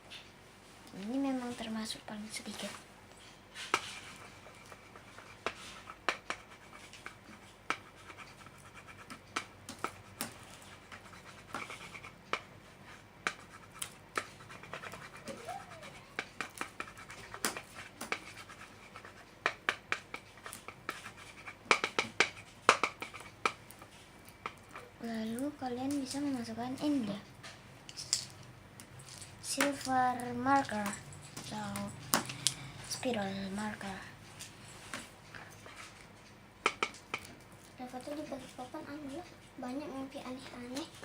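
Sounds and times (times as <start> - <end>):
clicks and taps: 36.6 - 37.4.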